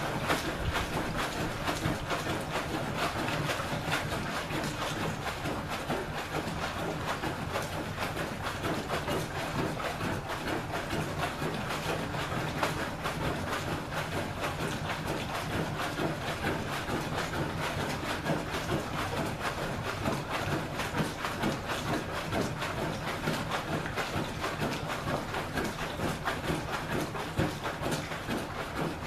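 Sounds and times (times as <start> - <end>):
plunger sloshing water: 0.0 - 29.0.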